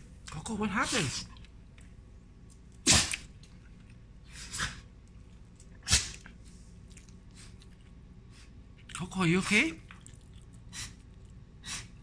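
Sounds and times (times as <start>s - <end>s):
dog sneezing: 2.8s - 3.3s, 5.8s - 6.2s, 11.6s - 12.0s.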